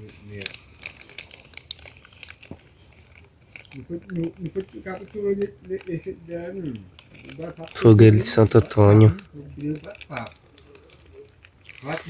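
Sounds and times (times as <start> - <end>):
crickets chirping: 0.0 - 12.0
faint voices talking: 3.8 - 11.2.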